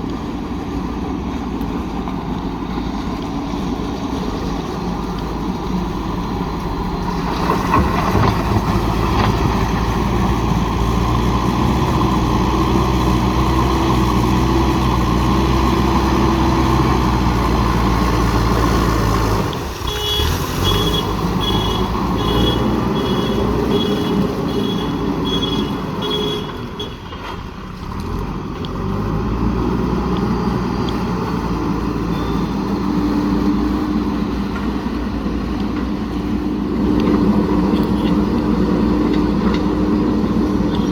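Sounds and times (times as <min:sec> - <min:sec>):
diesel engine running under load: 0:00.0 - 0:40.9
reversing alarm beeping: 0:19.9 - 0:26.9, 0:32.0 - 0:32.8.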